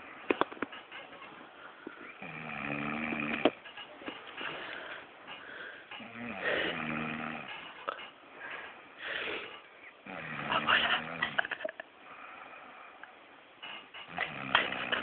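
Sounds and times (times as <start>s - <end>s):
deep snoring: 2.2s - 3.6s, 6.0s - 7.6s, 10.0s - 11.3s, 14.1s - 15.0s.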